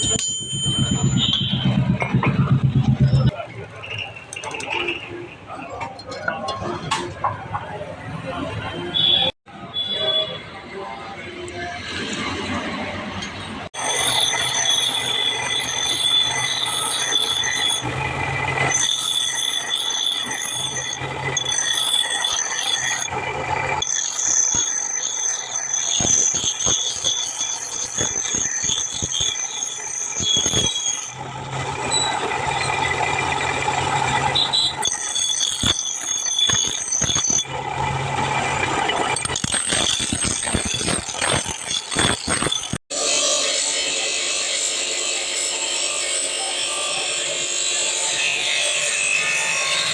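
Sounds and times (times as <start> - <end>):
power grinder grinding metal: 13.8 - 49.9.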